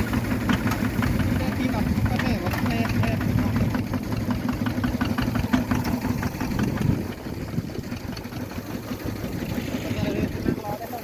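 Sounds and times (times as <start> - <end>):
motor hum: 0.0 - 11.0.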